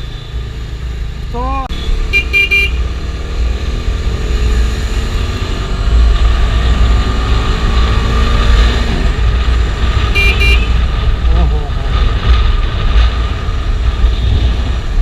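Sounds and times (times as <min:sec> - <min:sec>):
vehicle horn beeps: 0:01.7 - 0:02.8, 0:10.2 - 0:10.8
wind rumble: 0:02.9 - 0:15.0.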